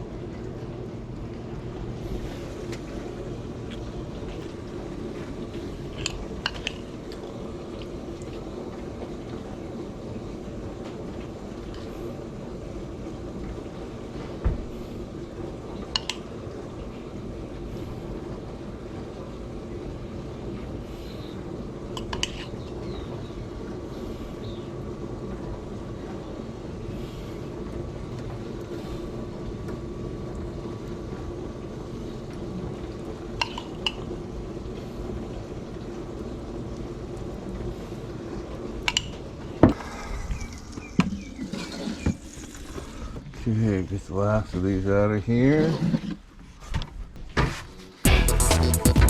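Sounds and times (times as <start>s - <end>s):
steady low hum: 0.0s - 49.0s.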